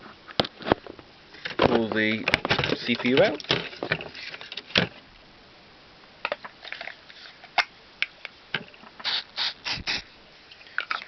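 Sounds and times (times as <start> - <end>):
short hissing bursts: 9.0 - 10.6.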